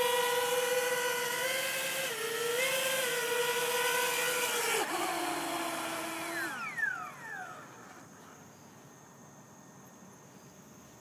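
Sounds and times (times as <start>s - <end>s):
drone motors and propellers whining: 0.0s - 8.4s.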